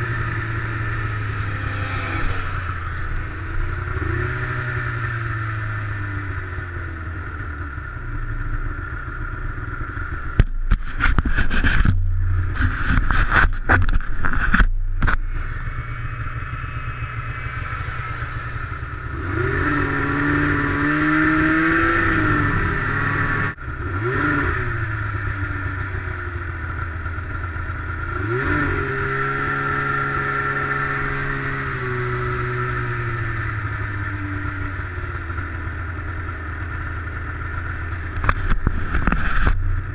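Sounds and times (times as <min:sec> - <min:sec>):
snowmobile engine revving: 0:00.0 - 0:06.7, 0:15.3 - 0:26.4, 0:27.4 - 0:35.5.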